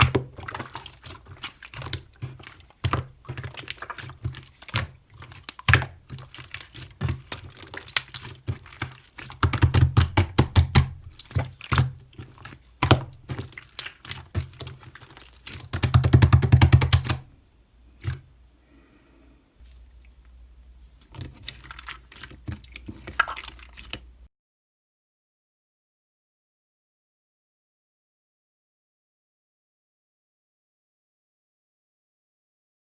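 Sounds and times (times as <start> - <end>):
slime popping and crackling: 0.0 - 17.3, 21.1 - 24.1
rapid squelching: 0.0 - 18.3, 19.6 - 24.3.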